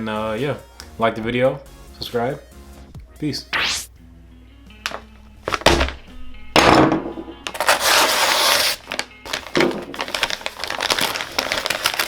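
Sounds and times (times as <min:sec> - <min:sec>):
background music: 0:00.0 - 0:12.0
plastic packaging crinkling: 0:04.8 - 0:06.0, 0:07.4 - 0:12.0.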